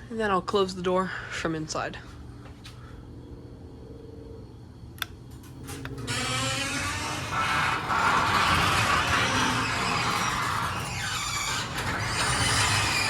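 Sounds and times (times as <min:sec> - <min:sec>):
garage door opener motor: 0:05.3 - 0:13.0
garage door rolling down track: 0:05.3 - 0:13.0.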